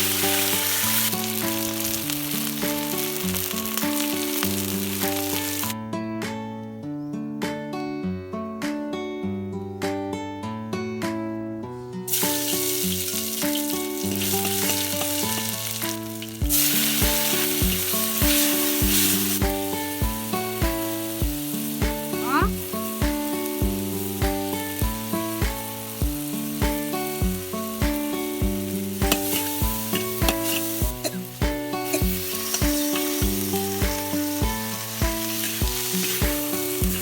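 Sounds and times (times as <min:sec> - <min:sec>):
food sizzling in hot oil: 0:00.0 - 0:05.8, 0:12.1 - 0:37.0
background music with beat: 0:16.4 - 0:37.0.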